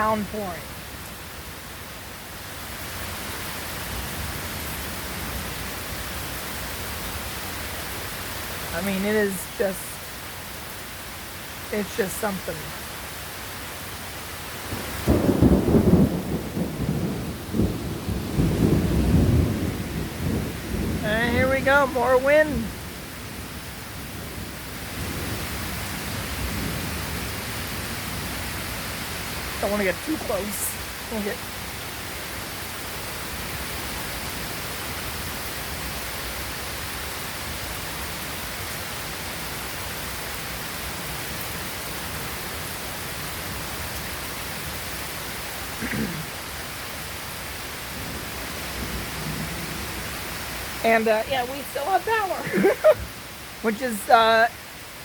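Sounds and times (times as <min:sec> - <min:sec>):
steady downpour of rain: 0:00.0 - 0:55.0
loud low thunder rumble: 0:14.7 - 0:21.6.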